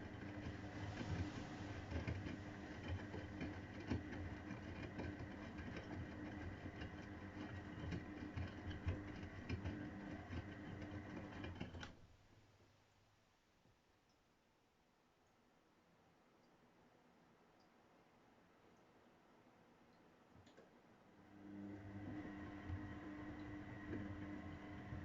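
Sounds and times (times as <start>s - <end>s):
washing machine motor humming: 0.0s - 11.9s, 21.0s - 25.0s
washing machine rattling and clicking: 0.0s - 11.9s.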